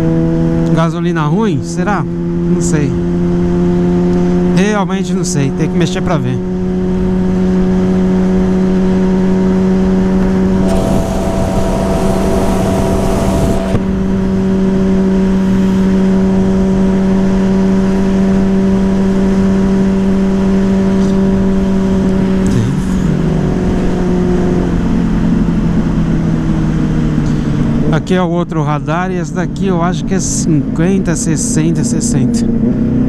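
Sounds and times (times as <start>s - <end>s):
motorcycle engine running: 9.7s - 20.5s
rush of noise: 10.6s - 16.4s.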